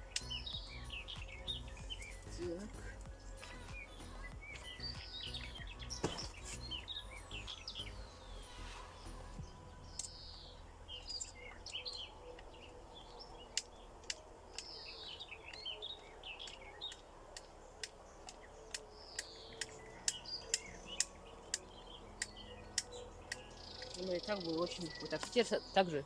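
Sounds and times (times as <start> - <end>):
songbirds singing: 0.0 - 26.0
sharp clicks: 16.4 - 24.1.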